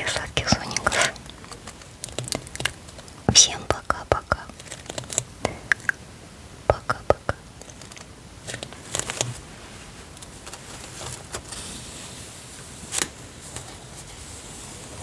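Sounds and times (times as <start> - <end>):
paper crackle: 0.1 - 3.2, 7.7 - 15.0
paper rustling: 7.8 - 15.0.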